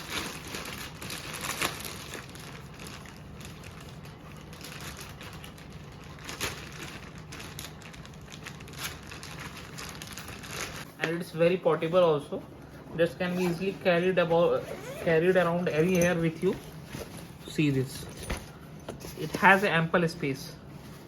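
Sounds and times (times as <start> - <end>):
packaging rustling and crinkling: 0.0 - 10.9.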